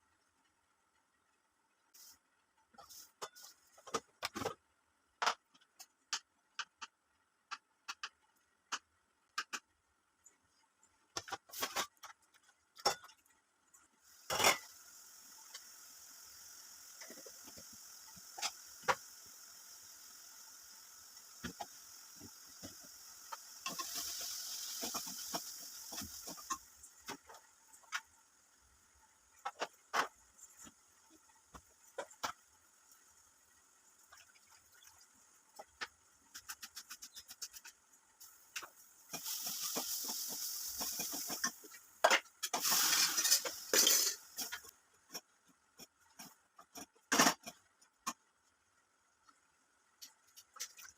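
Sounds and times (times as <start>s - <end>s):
steady hiss: 1.9s - 3.7s, 14.0s - 45.2s.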